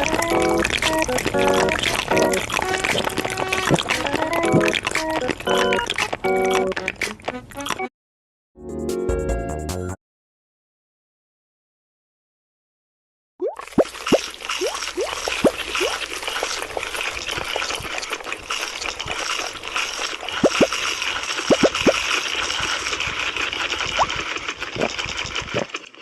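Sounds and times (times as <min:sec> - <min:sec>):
liquid bubbling and splashing: 0:00.0 - 0:07.9, 0:13.4 - 0:26.0.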